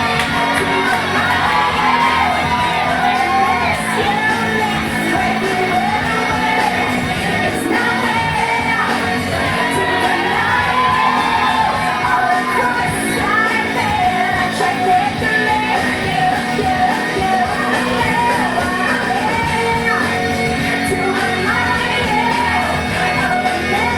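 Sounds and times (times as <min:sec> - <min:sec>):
people shouting: 0:00.0 - 0:04.6, 0:05.2 - 0:13.3
pop dance music with singing: 0:00.0 - 0:23.9.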